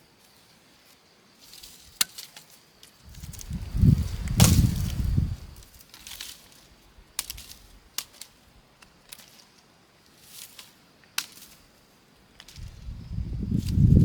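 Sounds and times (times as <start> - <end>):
faint hiss: 3.0 - 7.9.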